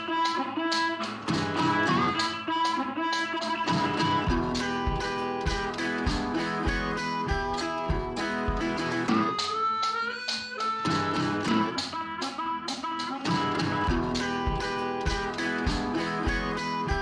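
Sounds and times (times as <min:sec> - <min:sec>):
plucked guitar tune: 0:00.0 - 0:17.0
steady bass line: 0:04.2 - 0:09.4, 0:13.8 - 0:17.0.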